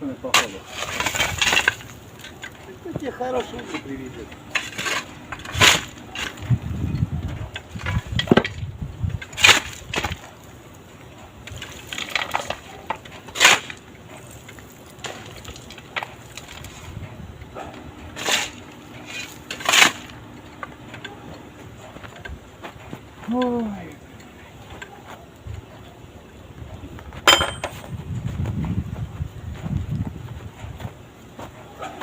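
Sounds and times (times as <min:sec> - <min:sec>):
hand tools striking metal: 0:00.2 - 0:08.6, 0:17.6 - 0:25.0, 0:27.2 - 0:27.9
metal rattling: 0:00.4 - 0:10.3, 0:27.2 - 0:27.9.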